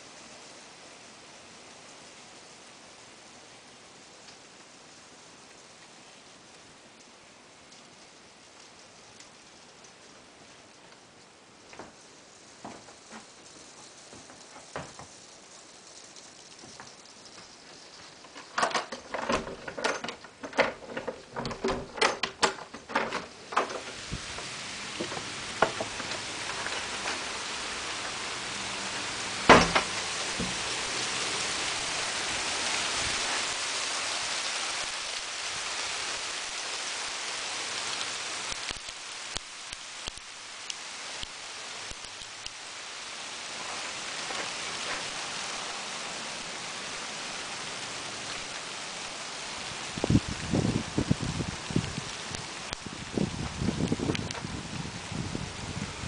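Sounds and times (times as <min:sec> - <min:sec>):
hailstones striking a surface: 0:11.2 - 0:54.6.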